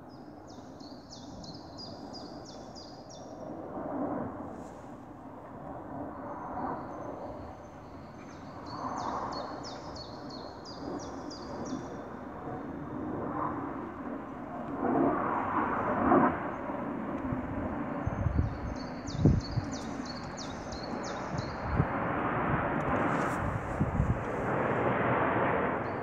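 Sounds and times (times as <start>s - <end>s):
airplane rumbling overhead: 0.0s - 26.0s
bird chirping: 0.1s - 3.4s, 6.8s - 12.0s, 17.9s - 21.9s.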